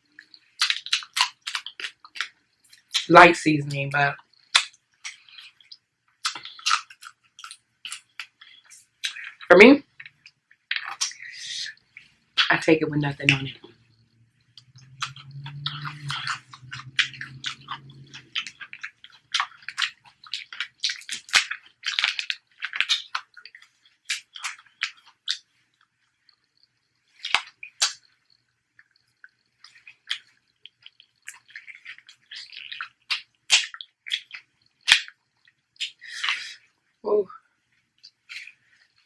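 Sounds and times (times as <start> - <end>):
crunchy chewing: 0.0 - 3.1, 4.2 - 12.5, 13.3 - 36.8, 38.0 - 39.0.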